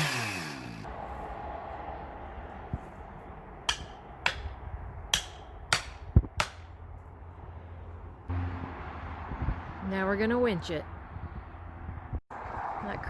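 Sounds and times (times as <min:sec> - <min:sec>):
sharp knocks: 0:03.7 - 0:06.7.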